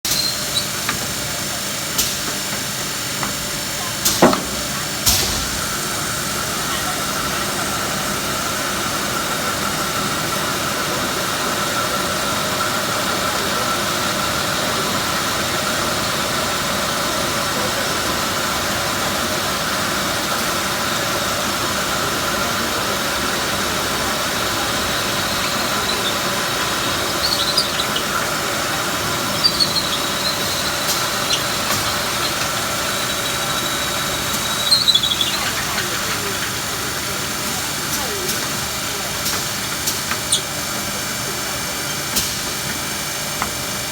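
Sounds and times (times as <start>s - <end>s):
drilling machine whine: 0.1s - 43.9s
sharp squeaks: 24.6s - 36.7s, 40.3s - 40.6s.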